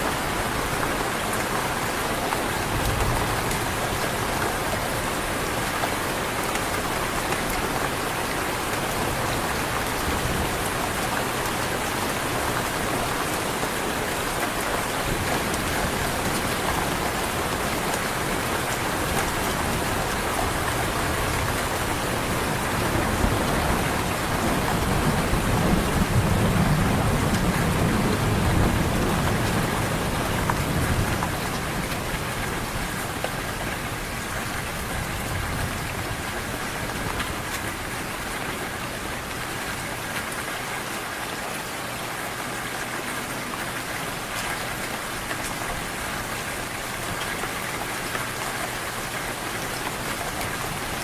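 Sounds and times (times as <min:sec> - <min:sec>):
heavy rain falling: 0:00.0 - 0:51.0
low rumble of thunder: 0:22.4 - 0:32.8.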